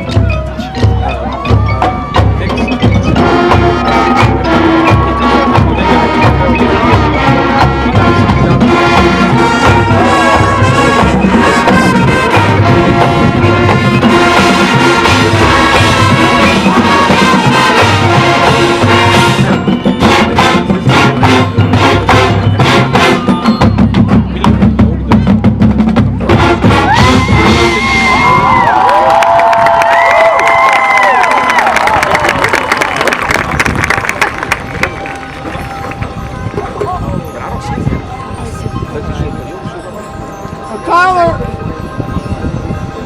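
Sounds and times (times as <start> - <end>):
sharp percussion hits: 0.0 - 28.7
marching band playing: 0.0 - 43.0.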